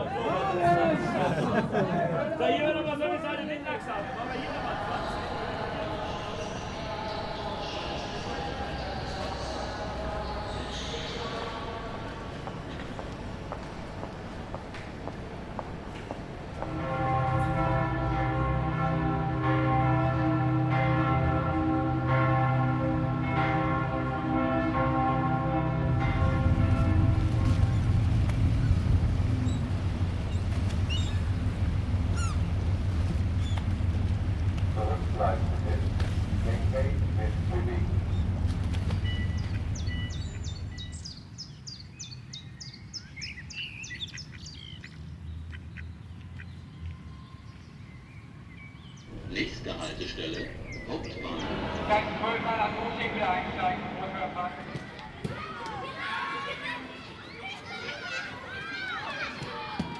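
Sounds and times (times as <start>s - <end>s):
songbirds chirping: 2.6s - 55.1s
church bells ringing: 4.3s - 14.0s, 16.6s - 41.2s, 49.1s - 56.6s
low rumble: 16.5s - 41.1s, 49.1s - 55.5s.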